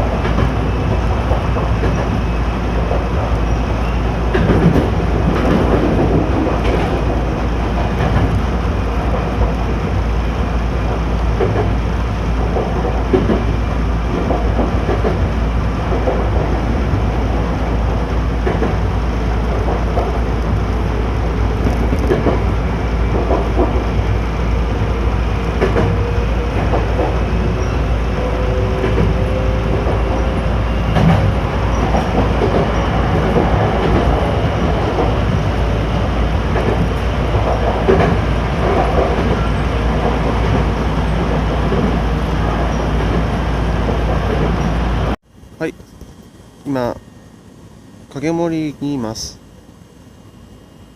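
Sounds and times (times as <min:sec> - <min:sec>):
electric train rumbling on rails: 0:00.0 - 0:50.9
wheels clicking over rail joints: 0:04.3 - 0:10.0, 0:10.7 - 0:24.1, 0:30.9 - 0:44.8.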